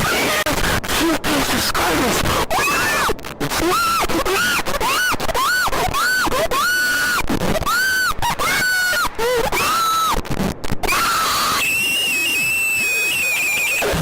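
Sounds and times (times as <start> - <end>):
harsh distorted noise: 0.0 - 14.0
wailing alarm cries: 10.9 - 14.0.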